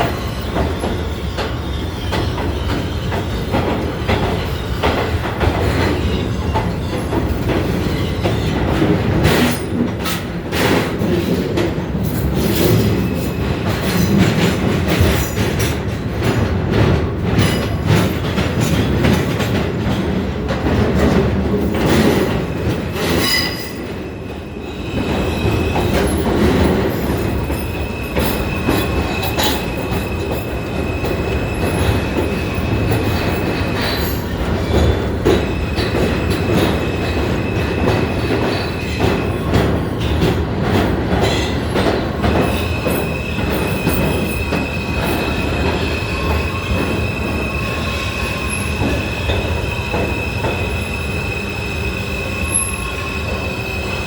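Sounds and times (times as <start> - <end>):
train wheels rumbling on rail: 0.0 - 54.0
high wheel squeal: 22.2 - 39.5, 42.4 - 54.0.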